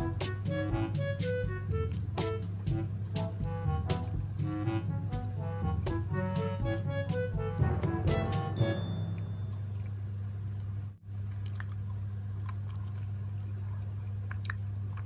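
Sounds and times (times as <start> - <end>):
background music: 0.0 - 9.9
steady low hum: 0.0 - 15.0
close-up chewing: 5.0 - 6.9, 9.2 - 15.0.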